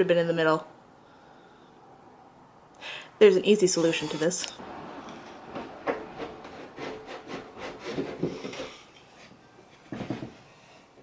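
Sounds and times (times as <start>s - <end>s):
wooden drawer sliding and knocking: 4.6s - 8.9s, 9.9s - 10.4s.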